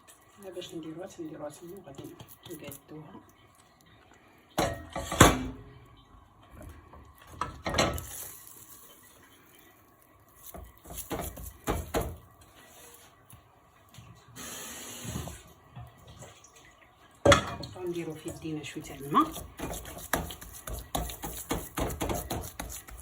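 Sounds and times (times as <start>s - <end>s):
pots and utensils clattering: 4.6s - 5.7s, 7.2s - 8.4s, 17.2s - 23.0s.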